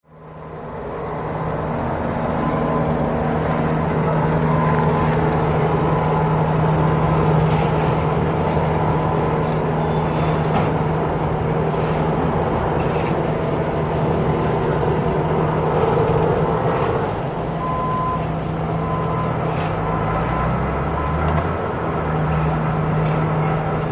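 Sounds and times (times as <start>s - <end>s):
heavy machinery engine humming: 0.0s - 23.9s.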